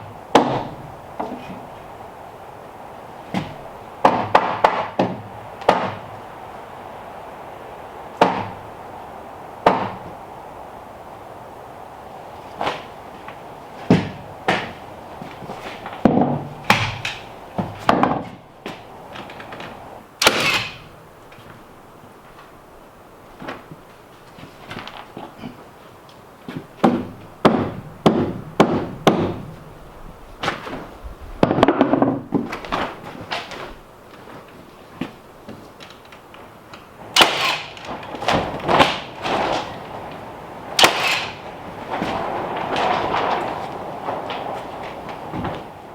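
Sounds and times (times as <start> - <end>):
wooden knocks and thuds: 0.3 - 1.7, 3.3 - 6.2, 8.2 - 8.6, 9.6 - 10.1, 13.8 - 20.8, 26.5 - 29.6, 30.4 - 33.7.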